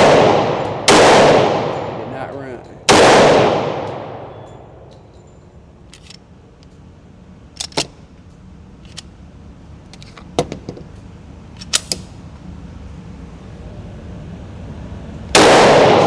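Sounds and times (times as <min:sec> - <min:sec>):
pistol metallic clicks: 0:03.7 - 0:06.9, 0:07.5 - 0:09.1, 0:11.6 - 0:12.2.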